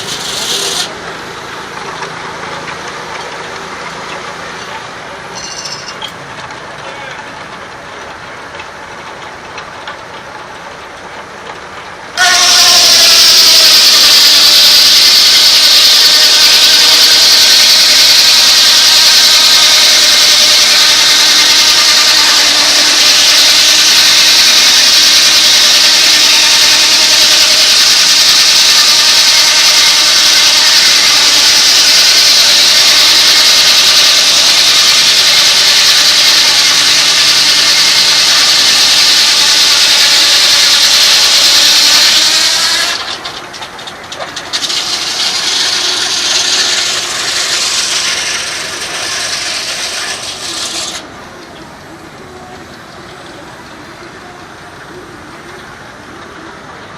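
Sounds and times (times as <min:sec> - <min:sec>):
circular saw blade cutting log: 0:00.0 - 0:01.0, 0:12.2 - 0:51.1.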